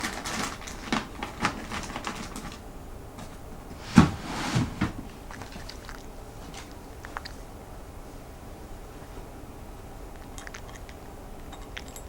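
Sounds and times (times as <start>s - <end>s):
cat crunching kibble: 0.0s - 2.7s, 5.2s - 7.5s, 10.0s - 12.0s
kibble clicking on dish: 5.3s - 7.4s, 10.1s - 12.0s.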